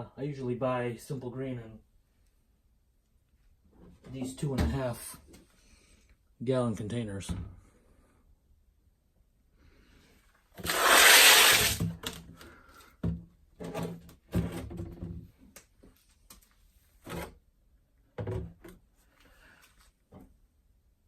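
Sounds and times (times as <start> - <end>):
rubbing scrape: 10.6 - 11.8.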